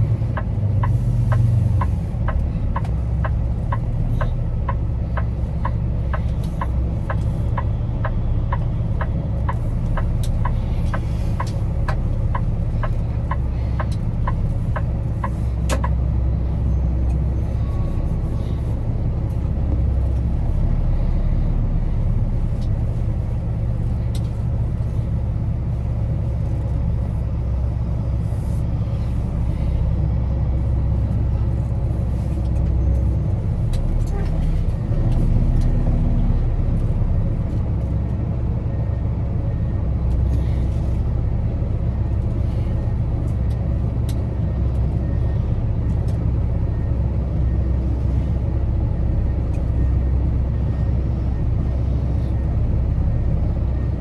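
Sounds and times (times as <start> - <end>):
truck diesel engine rumbling: 0.0 - 54.0
regular ticking: 0.2 - 16.0.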